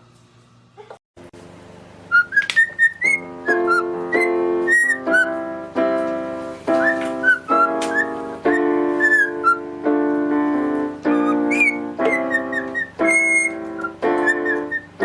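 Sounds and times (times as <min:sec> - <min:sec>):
keyboard music chords: 0:01.3 - 0:15.0
parrots whistling and chirping: 0:02.1 - 0:05.4, 0:06.7 - 0:09.7, 0:11.1 - 0:15.0.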